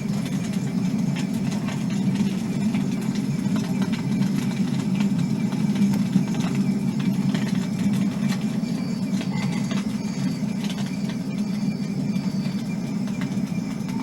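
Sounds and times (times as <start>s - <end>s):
recorded fire crackling: 0.0s - 14.0s.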